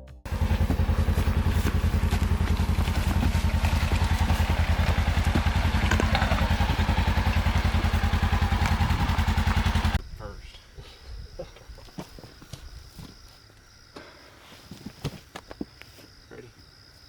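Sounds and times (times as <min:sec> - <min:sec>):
engine puttering steadily: 0:00.2 - 0:10.0.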